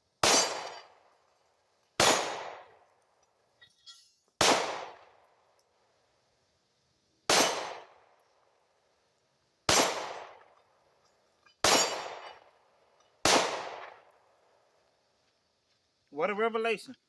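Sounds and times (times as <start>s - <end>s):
pistol shots: 0.2s - 1.1s, 2.0s - 2.8s, 4.4s - 5.2s, 7.3s - 8.1s, 9.7s - 10.5s, 11.6s - 12.5s, 13.2s - 14.1s.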